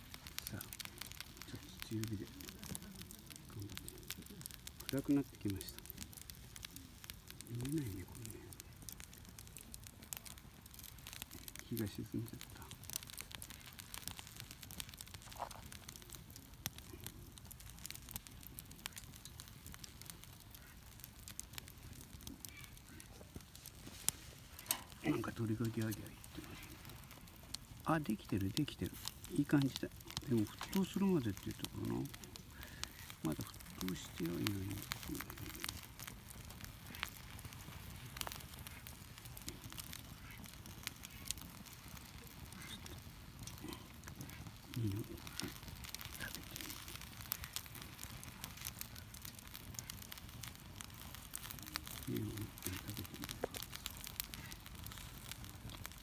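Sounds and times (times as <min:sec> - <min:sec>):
campfire crackling: 0:00.0 - 0:56.0
fire snaps and pops: 0:00.0 - 0:56.0.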